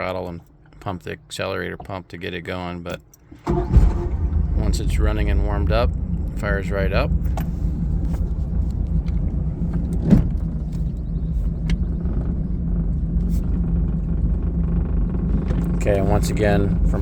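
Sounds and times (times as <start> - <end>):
boat engine idling: 3.4 - 17.0
engine knock: 11.1 - 17.0.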